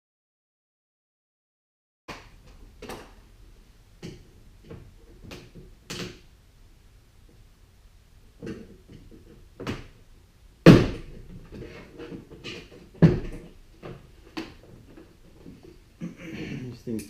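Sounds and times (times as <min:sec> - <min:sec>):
plastic knocks and rattling: 0:08.4 - 0:10.0, 0:10.6 - 0:15.8.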